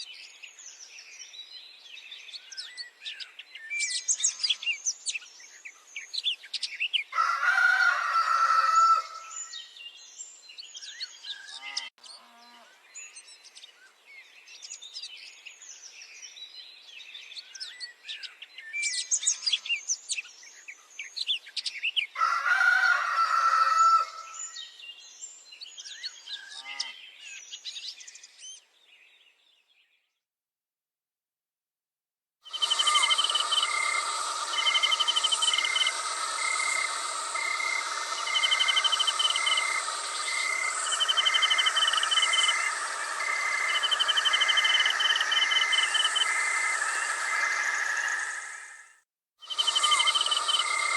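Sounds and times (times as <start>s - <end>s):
rooster crowing: 7.2s - 9.4s, 22.2s - 24.4s, 32.5s - 48.8s
small birds chirping: 32.5s - 50.9s.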